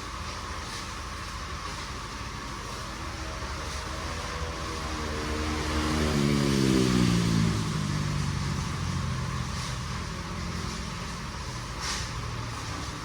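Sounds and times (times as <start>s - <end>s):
vehicle passing by: 2.8s - 13.0s.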